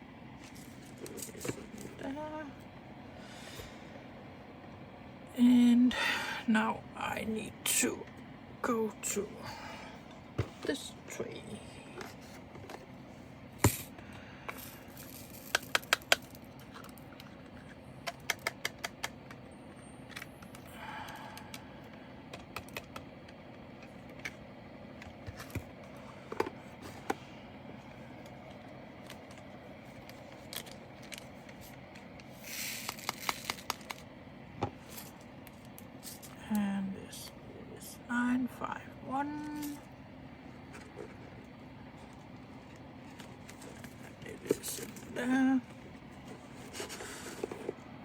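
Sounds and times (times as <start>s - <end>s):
plastic beads clicking and clattering: 32.6s - 34.0s.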